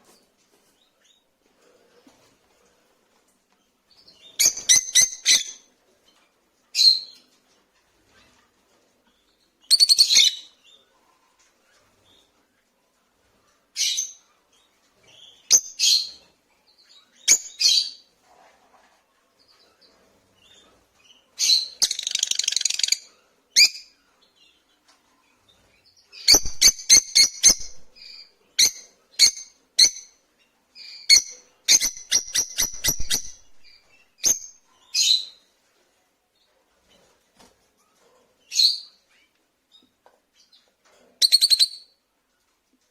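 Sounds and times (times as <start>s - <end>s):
lovebirds chirping shrilly: 26.2s - 30.1s, 30.9s - 35.2s.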